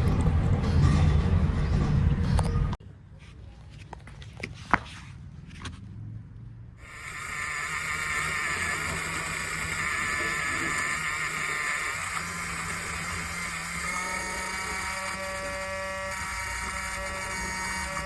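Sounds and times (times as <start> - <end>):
small electric motor whirring: 6.8 - 18.0.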